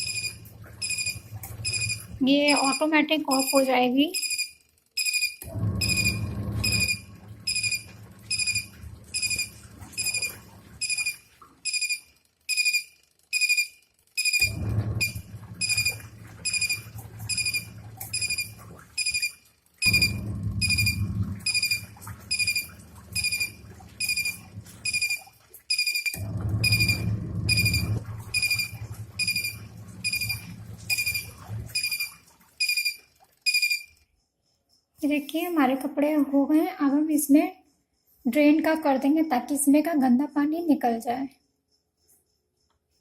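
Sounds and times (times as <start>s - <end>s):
washing machine motor humming: 0.0s - 3.8s, 5.4s - 12.0s, 14.4s - 34.0s
washing machine beeping: 0.0s - 34.2s.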